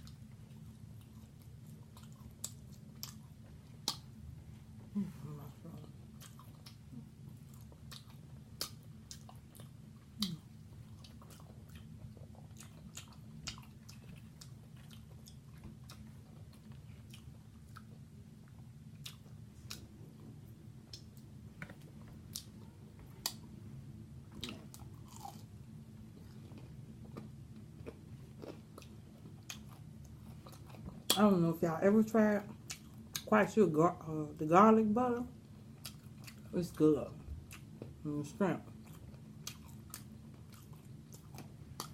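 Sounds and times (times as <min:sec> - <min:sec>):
person chewing and crunching: 0:00.0 - 0:04.2, 0:05.6 - 0:20.3, 0:24.3 - 0:31.3, 0:32.5 - 0:33.3, 0:35.4 - 0:38.0, 0:38.6 - 0:41.9
low hum: 0:00.0 - 0:41.9
wet mouth clicks: 0:03.8 - 0:04.1, 0:10.2 - 0:10.4.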